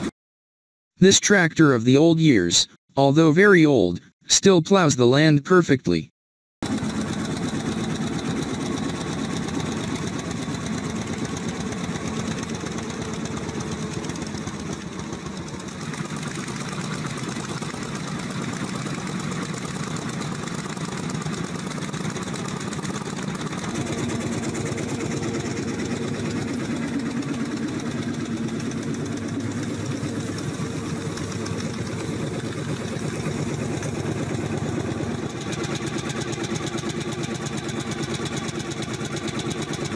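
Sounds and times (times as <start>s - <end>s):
tractor engine running: 6.6s - 39.9s.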